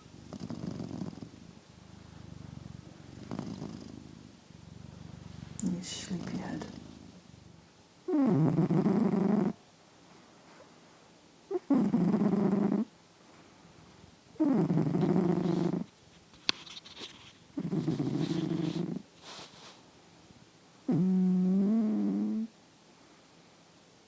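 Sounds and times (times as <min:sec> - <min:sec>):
cat snoring: 0:00.0 - 0:09.6, 0:11.5 - 0:12.9, 0:14.4 - 0:15.9, 0:17.6 - 0:19.1, 0:20.8 - 0:22.5.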